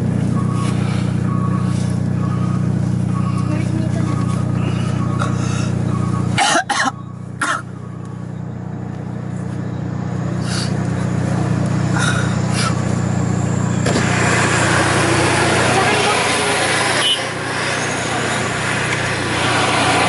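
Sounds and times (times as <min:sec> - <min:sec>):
moving vehicle hum: 0:00.0 - 0:20.0
person coughing: 0:06.4 - 0:07.7.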